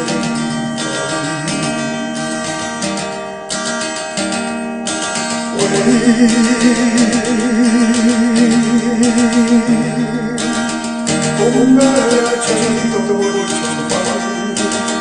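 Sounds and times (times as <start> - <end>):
acoustic guitar strumming: 0.0 - 15.0
man singing held note: 5.5 - 15.0.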